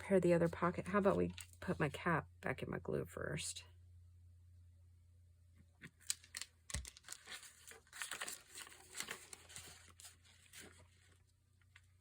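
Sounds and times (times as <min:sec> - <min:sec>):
paper rustling: 0:06.0 - 0:12.0.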